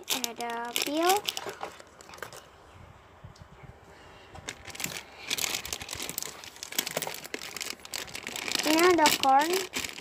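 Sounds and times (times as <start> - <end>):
plastic packaging crinkling: 0.0 - 2.4, 4.5 - 10.0.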